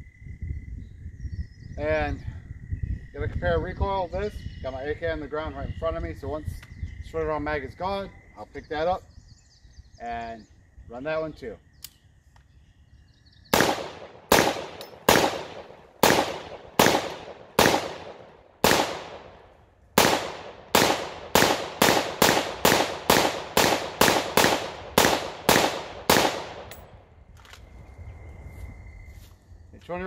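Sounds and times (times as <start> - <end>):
rifle shots cracking with echo: 13.5 - 26.9.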